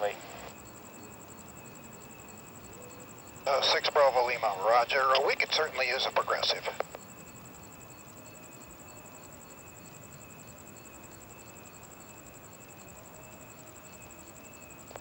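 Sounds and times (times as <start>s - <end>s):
radio static hiss: 0.0s - 0.7s, 3.4s - 7.0s
faint steady whine: 0.0s - 15.0s.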